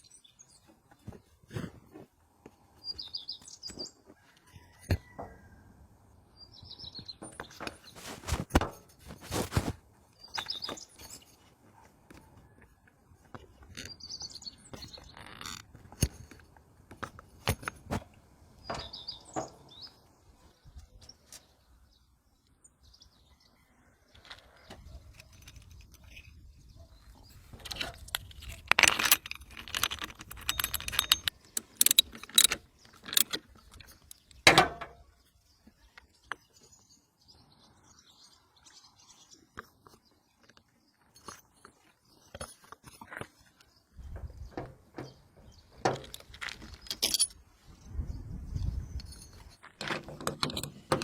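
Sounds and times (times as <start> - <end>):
metal tools clinking and rattling: 18.6 - 19.7, 27.4 - 35.0, 41.1 - 47.4, 48.8 - 51.0
birds chirping: 18.6 - 28.2.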